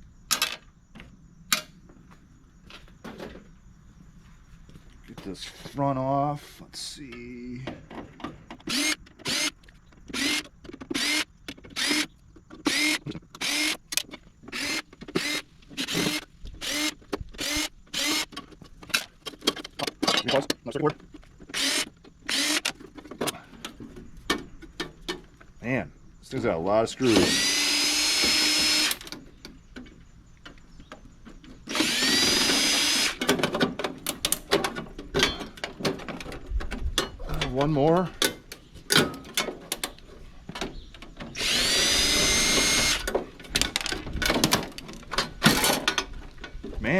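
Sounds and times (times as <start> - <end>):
cordless drill whirring: 8.7 - 9.5, 10.1 - 12.1, 12.7 - 13.8, 14.5 - 18.3, 21.5 - 22.6, 27.2 - 29.0, 31.7 - 33.2, 41.4 - 43.1
metal clicks and knocks: 18.3 - 25.3, 33.2 - 41.3, 43.0 - 46.8.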